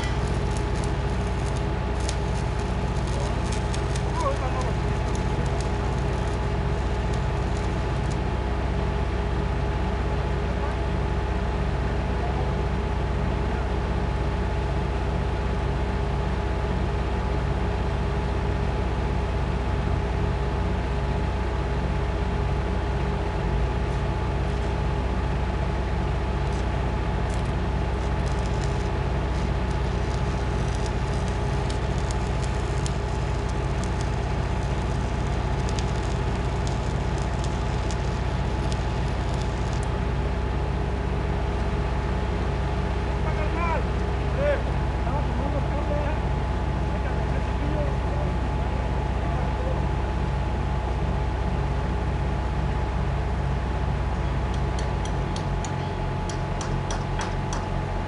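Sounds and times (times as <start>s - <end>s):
irregular crackling: 0.0s - 8.3s, 26.4s - 40.1s
workshop machinery humming: 0.0s - 13.8s, 21.5s - 58.0s.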